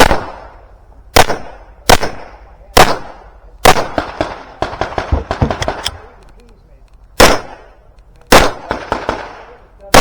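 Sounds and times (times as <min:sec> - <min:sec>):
handgun shots: 0:04.8 - 0:06.2.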